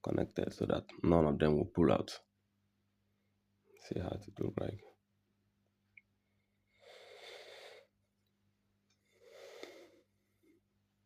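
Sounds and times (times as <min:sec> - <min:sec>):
person breathing softly: 0:06.4 - 0:08.0, 0:09.0 - 0:10.6.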